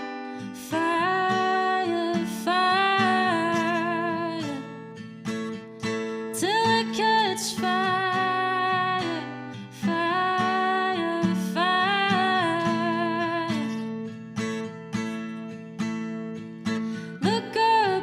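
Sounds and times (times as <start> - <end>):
strummed acoustic guitar: 0.0 - 18.0
person singing: 0.6 - 4.7, 6.4 - 13.9, 17.2 - 18.0.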